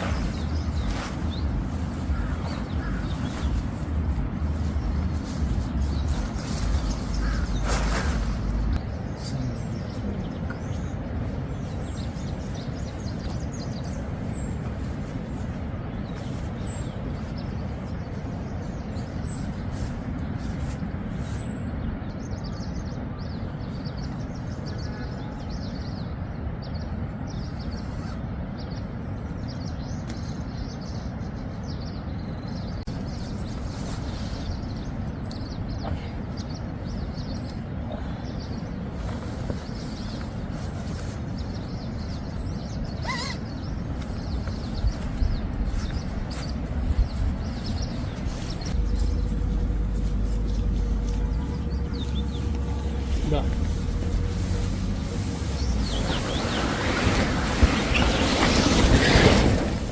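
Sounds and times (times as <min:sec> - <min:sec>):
faint high bird chirps: 0:39.5 - 0:59.7
rain falling on a tent: 0:52.4 - 0:59.9.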